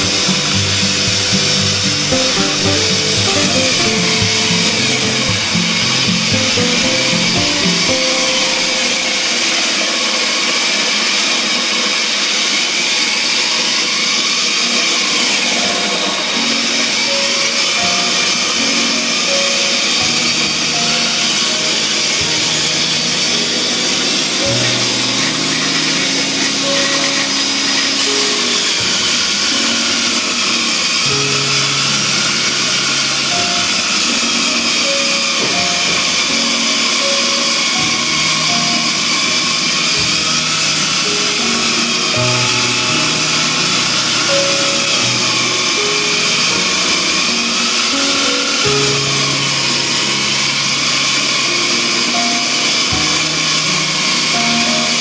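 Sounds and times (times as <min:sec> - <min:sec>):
background music with held notes: 0:00.0 - 0:55.0
electric disc sander running: 0:00.0 - 0:55.0
power tool hissing: 0:00.0 - 0:55.0.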